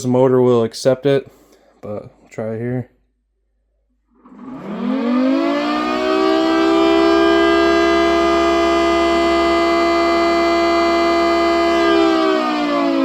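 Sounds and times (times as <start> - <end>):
tornado siren wailing: 4.2 - 13.0.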